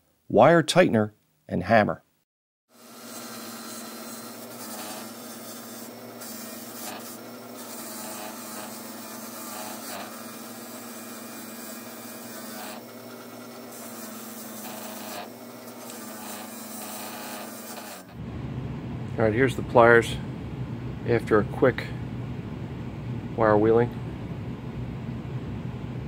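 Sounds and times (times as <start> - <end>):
motor hum: 2.8 - 23.3
wire bristles scratching metal: 3.1 - 10.2, 13.7 - 18.2.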